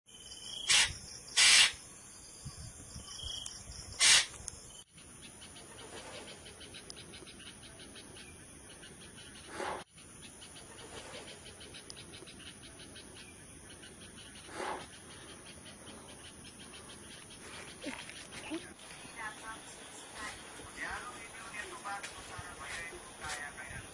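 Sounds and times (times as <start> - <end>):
insects chirping: 0.1 - 23.9.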